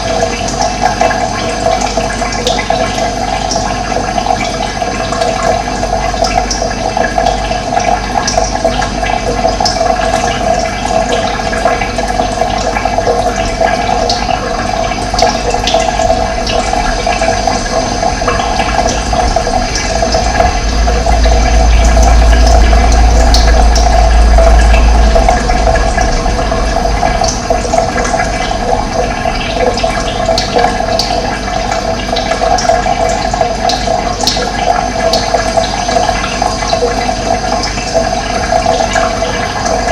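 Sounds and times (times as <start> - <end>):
running water rushing: 0.0 - 39.9
deep low rumble: 13.0 - 32.6.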